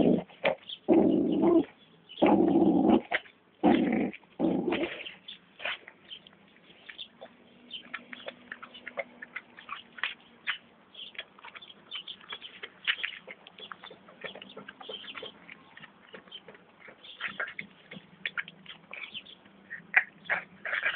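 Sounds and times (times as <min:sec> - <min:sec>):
puppy claws clicking and tapping: 0:07.2 - 0:20.9.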